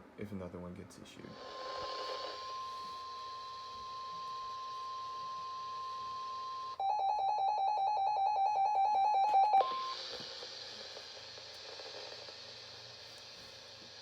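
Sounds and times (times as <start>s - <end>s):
radio hiss: 1.1s - 6.8s, 9.6s - 14.0s
steady high alarm tone: 1.7s - 10.0s
rapid pulsed beeps: 2.3s - 10.0s.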